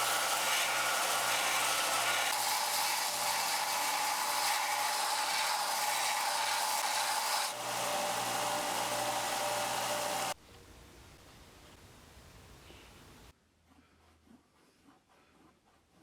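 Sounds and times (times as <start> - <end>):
belt sander grinding metal: 0.0 - 10.4.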